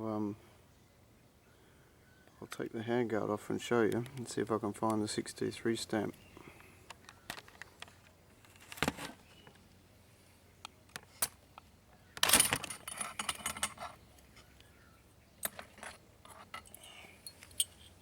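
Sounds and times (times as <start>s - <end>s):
rifle fittings clicking and rattling: 15.4s - 18.0s.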